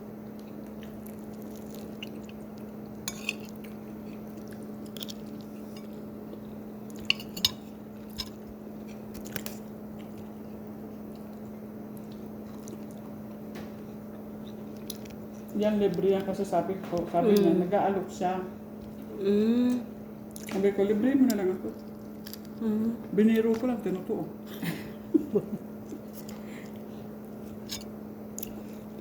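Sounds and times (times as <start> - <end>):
steady low hum: 0.0 - 29.0
soft chewing: 0.2 - 16.5, 18.7 - 20.6, 21.2 - 23.9, 25.2 - 29.0
utensils clinking against dishes: 3.1 - 3.6, 7.0 - 8.4, 27.6 - 27.9.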